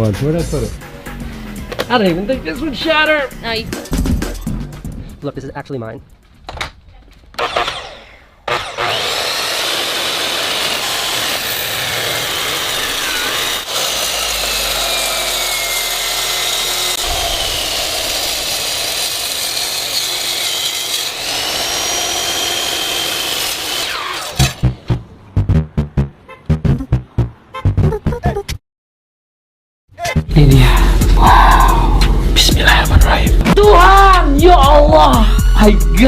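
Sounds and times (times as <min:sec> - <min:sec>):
power cutting tool whining: 0:07.4 - 0:24.6.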